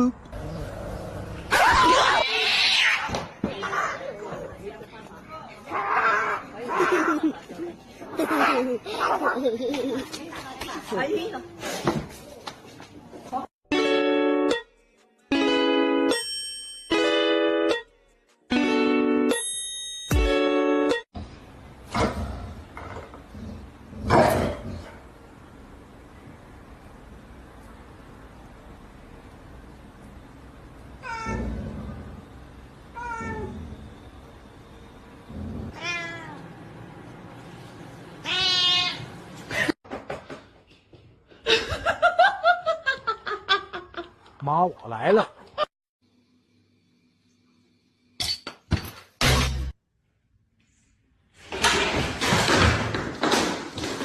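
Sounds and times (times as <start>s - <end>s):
cat meowing: 33.0s - 33.6s, 35.7s - 36.4s, 38.2s - 39.1s.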